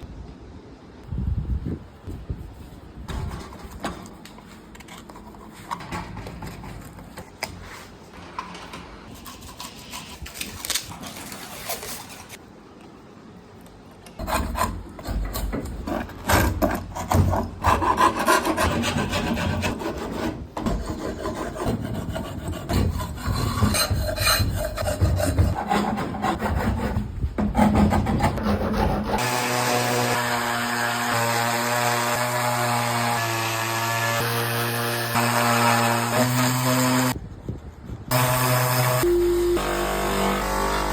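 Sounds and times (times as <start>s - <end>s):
steady hum: 38.2s - 40.9s.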